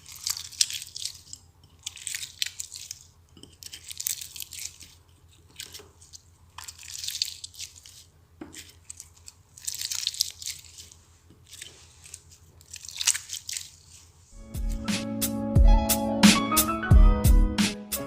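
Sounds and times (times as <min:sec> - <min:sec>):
slime squishing and crackling: 0:00.0 - 0:14.2.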